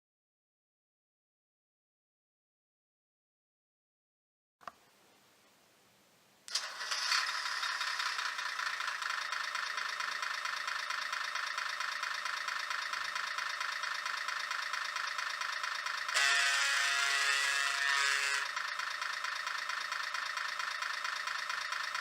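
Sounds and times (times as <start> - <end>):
electronic diesel engine sound effect: 6.5 - 22.0.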